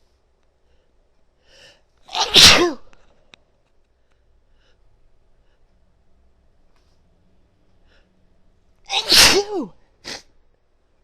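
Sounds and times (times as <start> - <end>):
woman sneezing: 2.1 - 2.9, 8.9 - 10.4.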